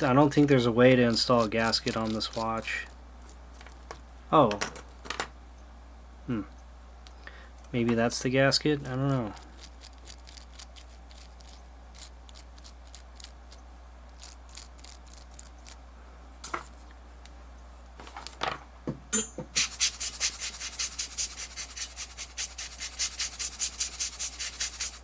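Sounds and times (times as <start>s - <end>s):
rapid scrubbing strokes: 0.0s - 3.0s, 8.8s - 13.3s, 19.6s - 25.0s.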